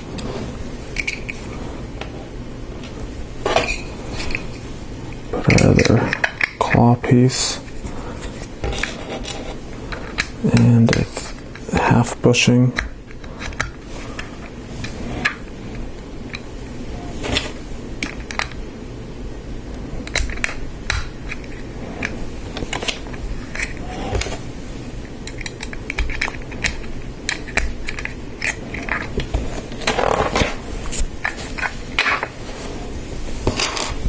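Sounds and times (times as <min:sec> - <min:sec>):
plastic parts clicking together: 0:25.2 - 0:30.5.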